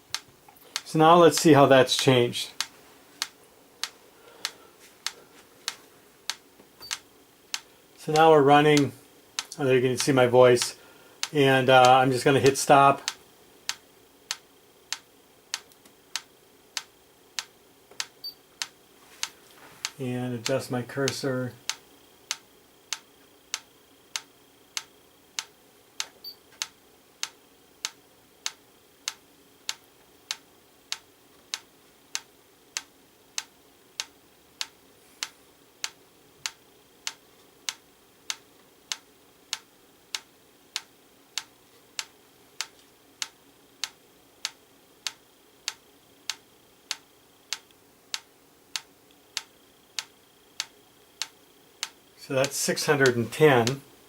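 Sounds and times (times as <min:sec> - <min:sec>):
metronome ticking: 0:06.8 - 0:15.0.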